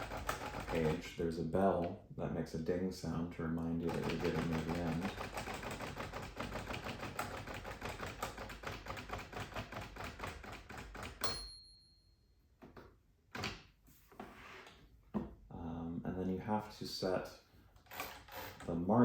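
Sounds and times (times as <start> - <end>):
typewriter bell ding: 11.2 - 12.2.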